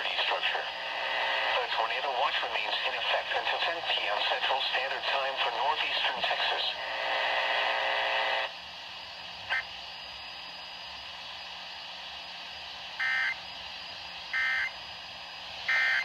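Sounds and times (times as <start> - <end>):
steady radio hiss: 0.0 - 10.3
harsh digital data squawks: 13.0 - 13.4, 14.3 - 14.8, 15.7 - 16.0.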